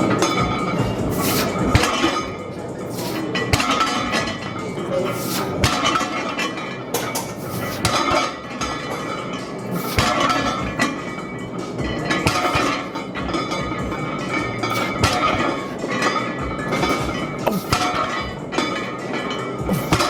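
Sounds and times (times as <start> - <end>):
background din: 0.0 - 20.0
weight plates clanking: 0.0 - 20.0.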